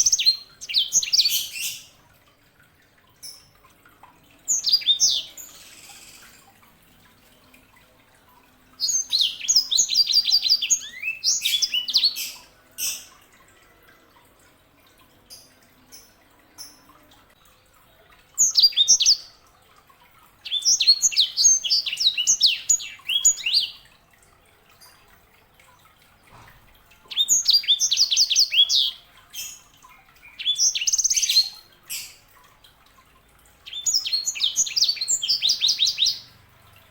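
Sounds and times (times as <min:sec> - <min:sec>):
canary singing chirps and trills: 0:00.0 - 0:02.0, 0:04.4 - 0:06.5, 0:08.8 - 0:13.2, 0:18.4 - 0:19.4, 0:20.3 - 0:23.9, 0:26.9 - 0:32.3, 0:33.5 - 0:36.9.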